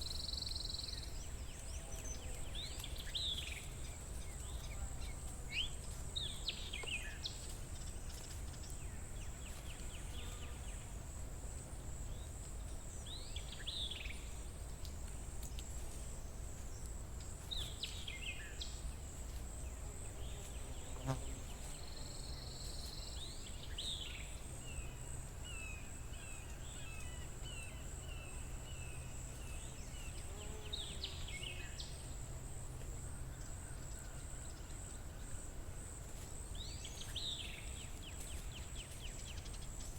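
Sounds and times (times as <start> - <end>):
insects buzzing: 15.2 - 39.9.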